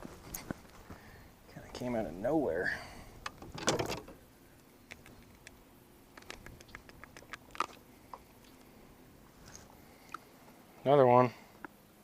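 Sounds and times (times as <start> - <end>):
small clicks and taps: 6.2 - 8.7.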